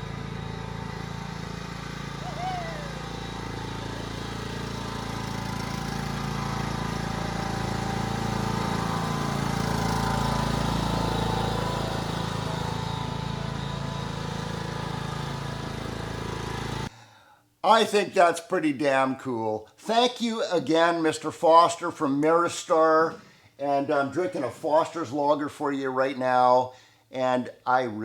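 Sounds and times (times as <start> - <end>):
riding lawnmower engine running: 0.0 - 16.9.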